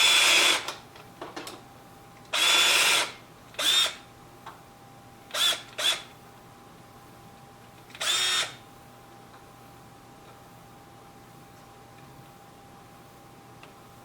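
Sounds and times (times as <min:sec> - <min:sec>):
power drill motor whine: 0:00.0 - 0:00.7, 0:02.3 - 0:04.0, 0:05.3 - 0:06.1, 0:08.0 - 0:08.6.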